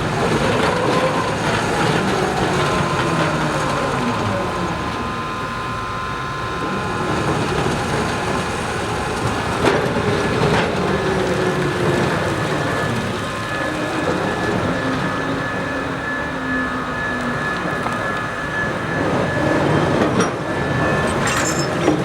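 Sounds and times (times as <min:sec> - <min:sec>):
train wheels squealing: 0:09.9 - 0:22.0.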